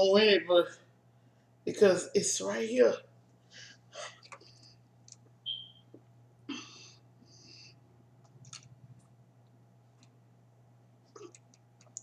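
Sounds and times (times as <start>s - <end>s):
steady low hum: 0.0s - 12.0s
woman breathing: 6.5s - 7.8s.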